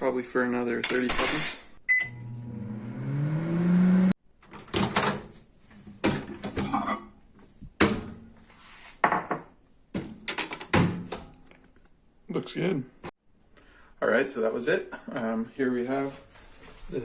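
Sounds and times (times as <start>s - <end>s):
microwave oven humming: 1.9s - 4.2s.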